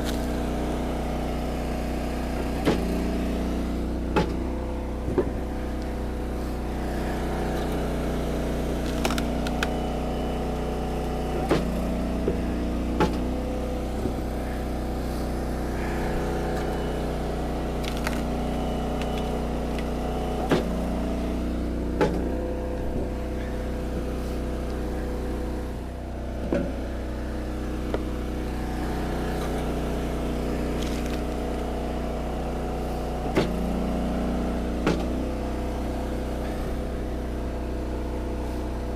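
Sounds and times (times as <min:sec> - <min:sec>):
log splitter engine running: 0:00.0 - 0:38.9
wood splitting cracks: 0:07.5 - 0:09.8, 0:17.6 - 0:20.8, 0:29.4 - 0:31.8
wood pieces falling: 0:17.8 - 0:18.4, 0:30.6 - 0:31.7.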